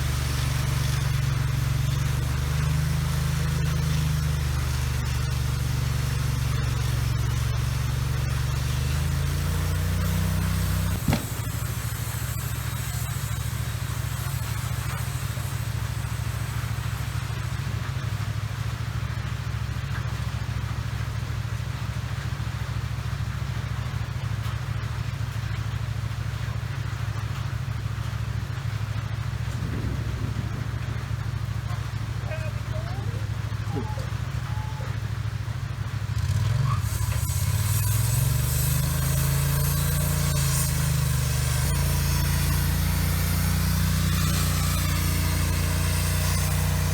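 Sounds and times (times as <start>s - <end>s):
large engine running: 0.0s - 46.9s
sharp knock: 11.0s - 11.9s.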